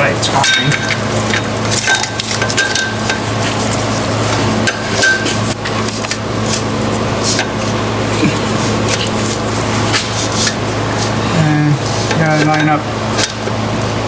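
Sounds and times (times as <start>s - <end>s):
low hum: 0.8s - 11.9s.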